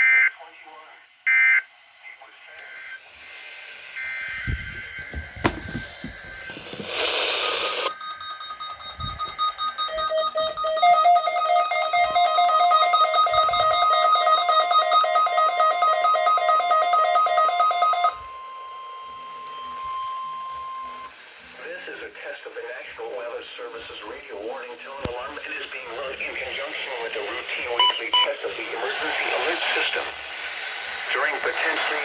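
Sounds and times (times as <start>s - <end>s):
pulsing two-tone alarm beeps: 4.0s - 21.1s, 27.8s - 28.3s
steady warning tone: 4.0s - 21.6s
burst of static: 5.7s - 7.9s, 24.8s - 32.0s.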